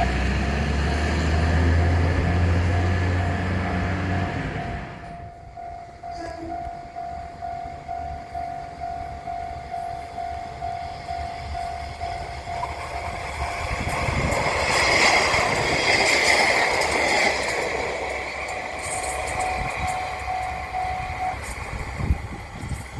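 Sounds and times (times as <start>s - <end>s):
level crossing bell ringing: 0.0s - 13.1s, 18.0s - 22.9s
train passing: 0.0s - 22.9s.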